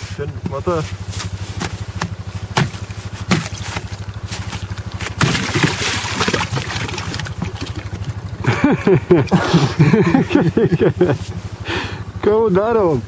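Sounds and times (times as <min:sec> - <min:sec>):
engine idling: 0:00.0 - 0:13.0
sharp knocks: 0:01.6 - 0:03.9.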